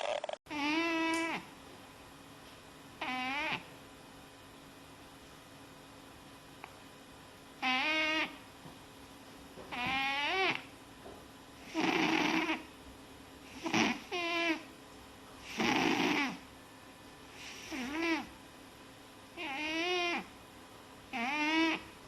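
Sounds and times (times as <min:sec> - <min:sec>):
animal snoring: 0:03.0 - 0:03.6, 0:07.6 - 0:08.4, 0:11.6 - 0:12.7, 0:13.5 - 0:14.6, 0:15.4 - 0:16.4, 0:17.4 - 0:18.3, 0:19.4 - 0:20.3, 0:21.1 - 0:21.8.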